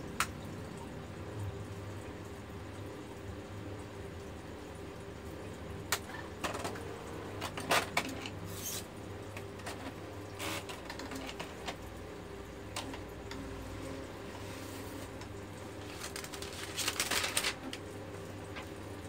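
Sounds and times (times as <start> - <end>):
typewriter clicks and rattles: 15.9 - 17.8.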